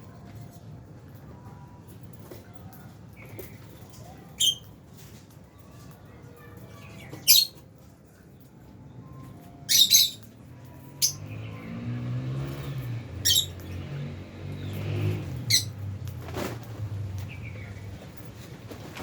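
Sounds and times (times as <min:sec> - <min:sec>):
lovebirds chirping shrilly: 0:04.4 - 0:04.7, 0:07.2 - 0:07.6, 0:09.7 - 0:10.3, 0:11.0 - 0:11.4, 0:13.2 - 0:13.7, 0:14.6 - 0:15.8
vehicle engine rumble: 0:10.2 - 0:19.0.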